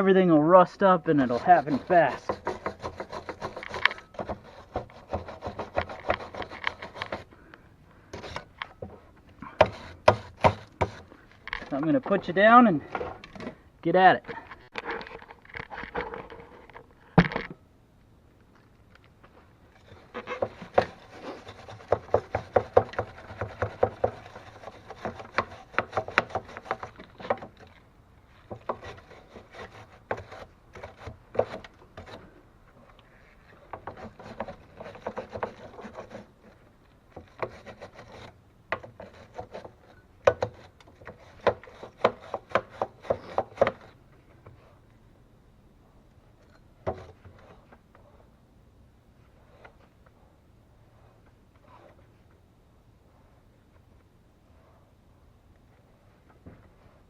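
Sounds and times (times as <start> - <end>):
scraping and brushing metal: 1.0 - 7.3, 19.7 - 32.4.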